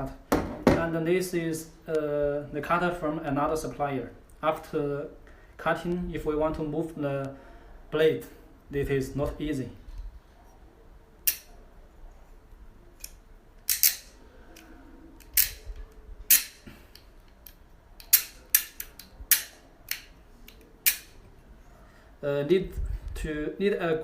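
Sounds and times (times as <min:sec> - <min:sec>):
ratchet cable cutter clicking: 0:13.0 - 0:14.1, 0:15.2 - 0:15.6, 0:16.3 - 0:16.6, 0:17.3 - 0:21.1.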